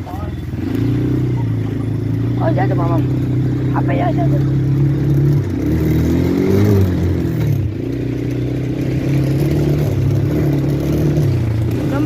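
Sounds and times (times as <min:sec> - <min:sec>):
small atv engine revving: 0:00.0 - 0:12.0.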